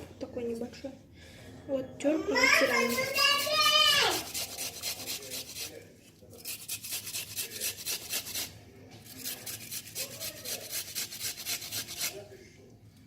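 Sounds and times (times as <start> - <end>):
onion grating on metal grater: 2.6 - 12.2.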